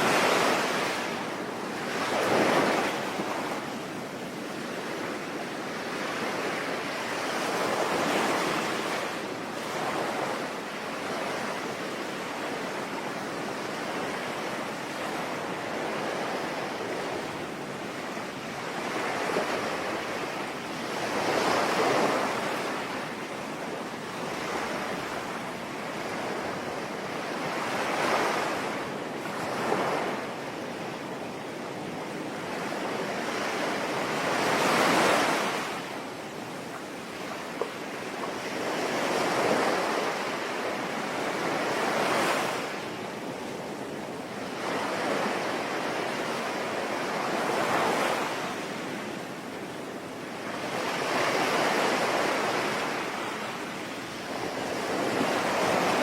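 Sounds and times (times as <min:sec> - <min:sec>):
sea waves breaking: 0:00.0 - 0:30.4, 0:31.8 - 0:56.0.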